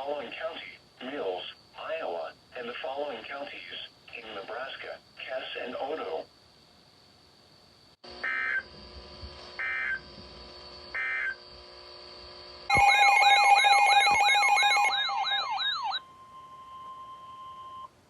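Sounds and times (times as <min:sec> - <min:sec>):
warbling alarm: 0:12.7 - 0:18.0.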